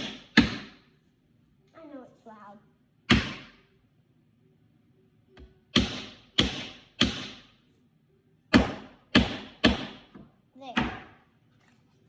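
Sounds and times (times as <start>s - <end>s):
hammer driving nails into wood: 0.0s - 0.8s, 3.1s - 3.5s, 5.7s - 7.5s, 8.5s - 11.2s.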